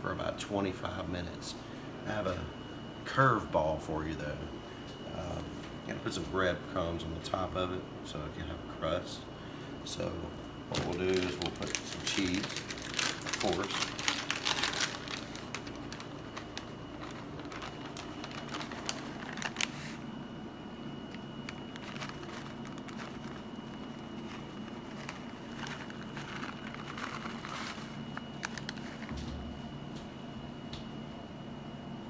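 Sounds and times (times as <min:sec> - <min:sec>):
steady background hum: 0:00.0 - 0:32.0
plastic bag crinkling: 0:10.7 - 0:20.1, 0:21.0 - 0:29.3.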